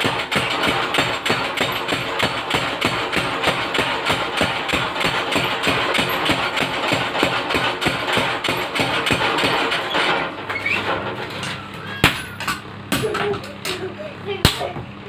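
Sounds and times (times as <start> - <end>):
sharp hammer strikes: 0.0 - 9.6
power hammer pounding: 0.0 - 10.4.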